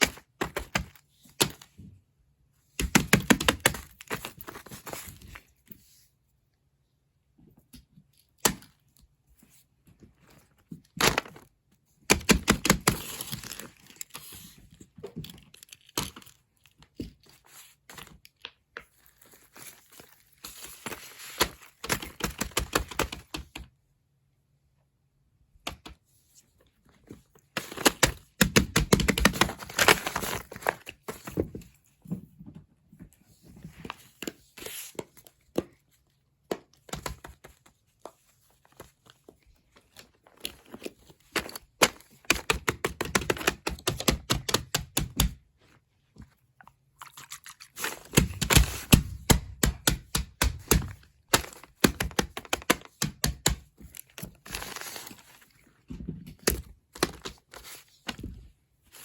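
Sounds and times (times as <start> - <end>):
plastic toys clicking and crinkling: 10.2 - 23.7, 27.1 - 31.5, 33.8 - 45.4, 47.5 - 59.0.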